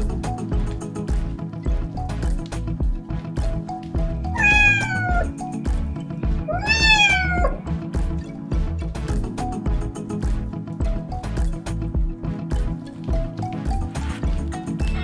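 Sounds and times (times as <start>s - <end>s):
background music with steady beat: 0.0s - 15.0s
pet crying: 4.4s - 5.4s, 6.5s - 7.6s.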